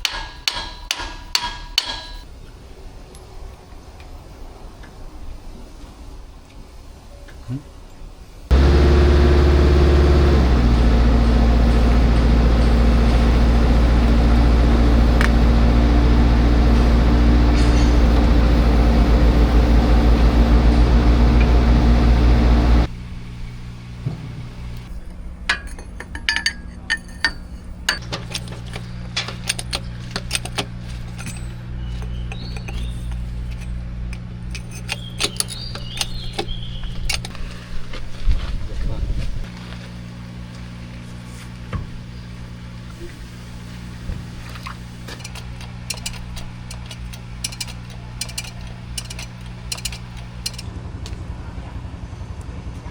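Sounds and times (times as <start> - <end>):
machine engine-like hum: 8.4 - 52.9
metal parts clinking: 25.4 - 37.6, 45.0 - 50.7.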